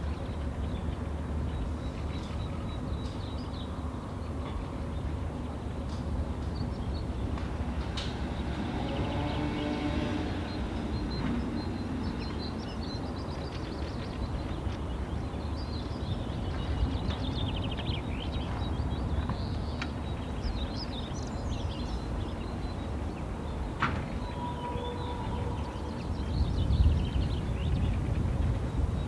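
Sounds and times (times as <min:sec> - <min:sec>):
birds chirping and trilling: 0:06.6 - 0:28.5.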